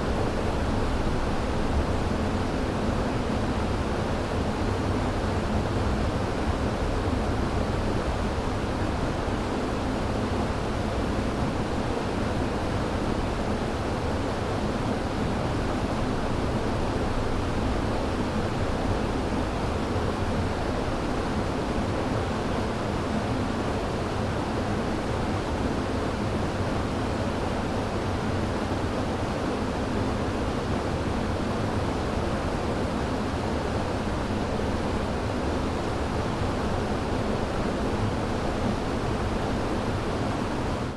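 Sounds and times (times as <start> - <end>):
river rushing water: 8.5 - 40.9.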